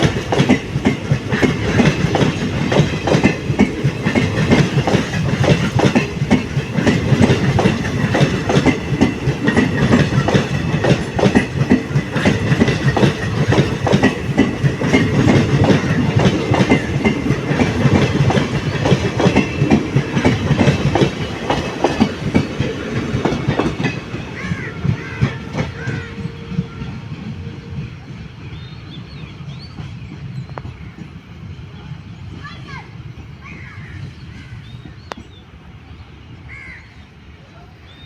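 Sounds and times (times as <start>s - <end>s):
train wheels clattering over rail joints: 0.0s - 26.5s.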